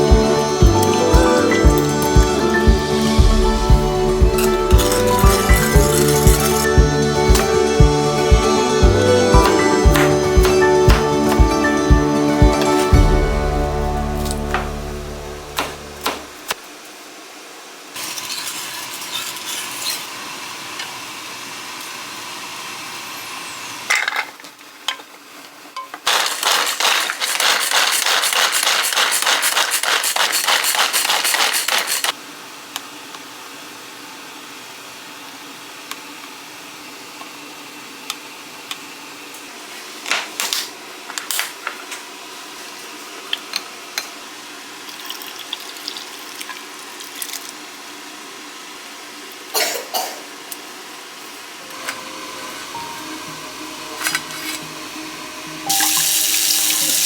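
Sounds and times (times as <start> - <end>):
utensils and dishes clinking: 4.7 - 6.8, 26.1 - 32.1, 55.7 - 57.0
rapid chopping strokes: 9.4 - 11.1, 26.1 - 32.2.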